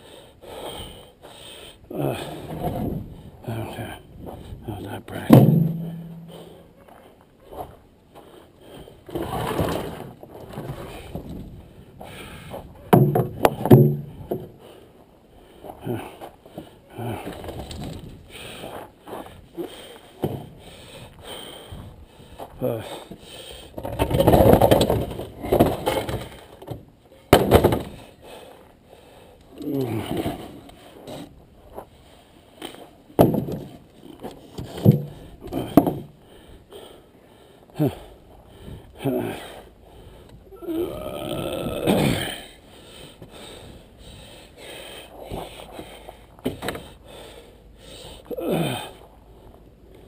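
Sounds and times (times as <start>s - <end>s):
man breathing heavily: 0.0s - 4.9s, 5.8s - 9.2s, 10.7s - 12.9s, 14.0s - 24.0s, 27.9s - 33.0s, 34.9s - 50.0s
man grunting: 1.9s - 2.5s, 29.6s - 30.4s, 39.0s - 39.6s, 40.5s - 42.6s, 48.3s - 49.0s
hard objects clattering and knocking: 5.3s - 6.4s, 12.9s - 14.5s, 23.8s - 28.0s, 33.2s - 36.1s
sharp knocks: 5.3s - 6.4s.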